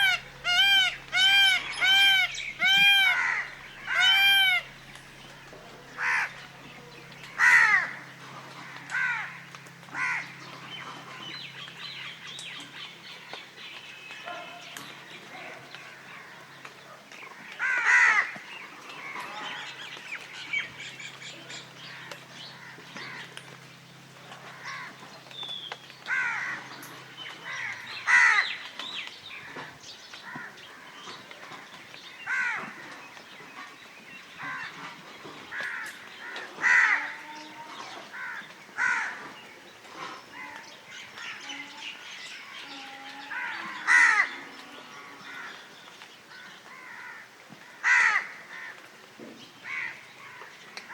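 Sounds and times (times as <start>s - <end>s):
crows cawing: 0.0s - 11.3s, 17.3s - 19.7s, 21.8s - 23.5s, 24.4s - 25.1s, 26.1s - 28.6s, 29.3s - 33.0s, 34.4s - 37.4s, 38.0s - 39.4s, 43.3s - 44.4s, 45.2s - 45.7s, 46.3s - 48.9s, 49.6s - 50.9s.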